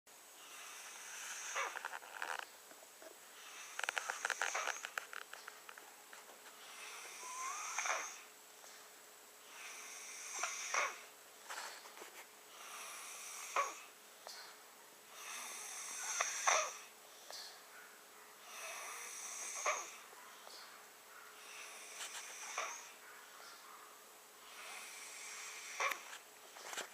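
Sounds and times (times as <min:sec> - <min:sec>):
child snoring: 0:00.4 - 0:02.4, 0:03.4 - 0:05.0, 0:06.6 - 0:08.3, 0:09.4 - 0:11.7, 0:12.5 - 0:14.0, 0:15.1 - 0:16.9, 0:18.4 - 0:20.1, 0:21.4 - 0:23.0, 0:24.4 - 0:26.2.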